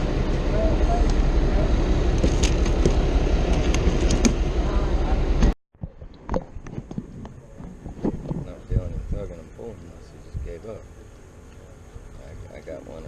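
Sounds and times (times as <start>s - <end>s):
loud low rumble: 0.0s - 5.6s.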